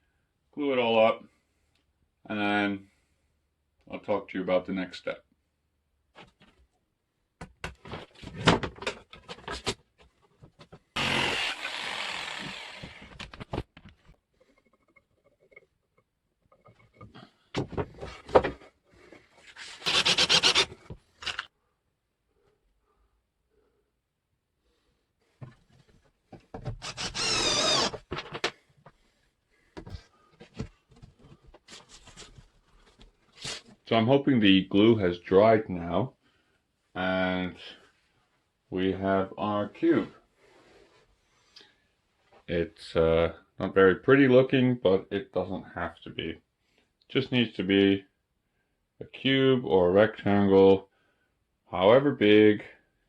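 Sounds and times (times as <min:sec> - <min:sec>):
power tool running on wood: 0:11.0 - 0:13.1, 0:26.9 - 0:27.9
wood knocking and scraping: 0:12.8 - 0:18.8, 0:25.4 - 0:26.9, 0:29.8 - 0:33.1
wooden boards knocking and clattering: 0:17.6 - 0:18.7.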